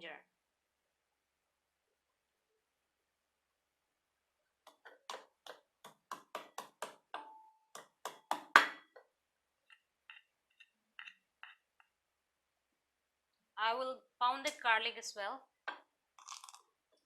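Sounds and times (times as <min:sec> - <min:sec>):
ginger being pounded: 0:04.7 - 0:09.0.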